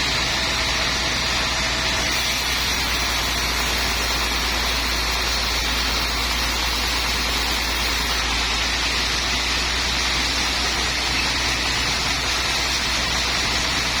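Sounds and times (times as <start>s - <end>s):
low machinery hum: 0.0s - 14.0s
sawmill machinery rushing: 0.0s - 14.0s.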